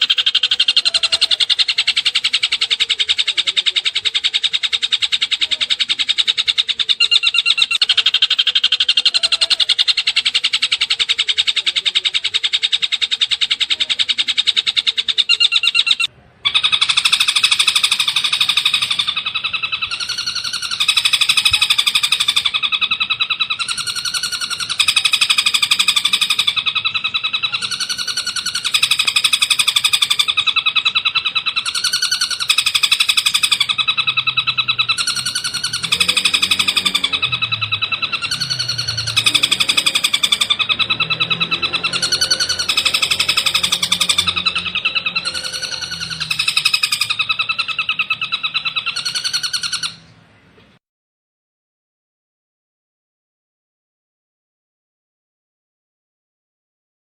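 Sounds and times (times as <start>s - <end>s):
bird chattering trill: 0.0s - 50.1s.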